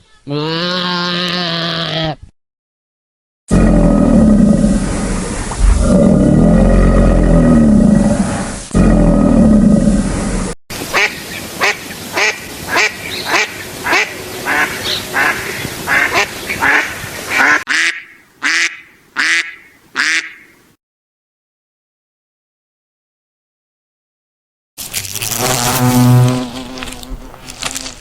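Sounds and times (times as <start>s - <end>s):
loud deep roar: 3.5s - 10.5s
duck quacking: 10.9s - 20.6s.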